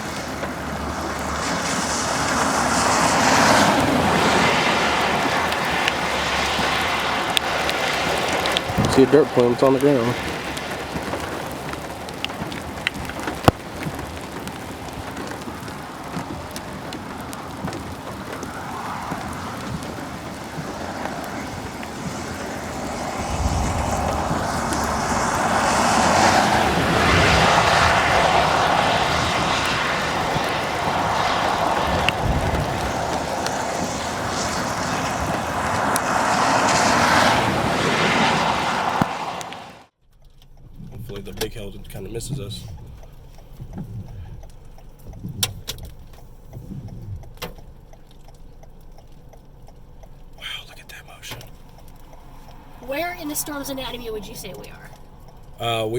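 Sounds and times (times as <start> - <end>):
strong wind on microphone: 0.0 - 11.6, 14.7 - 39.9.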